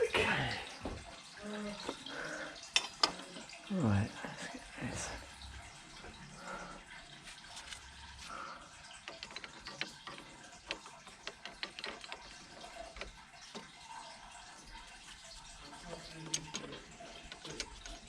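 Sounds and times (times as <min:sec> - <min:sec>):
faint trickling water: 0:00.0 - 0:18.0
small clicks and taps: 0:09.0 - 0:14.1.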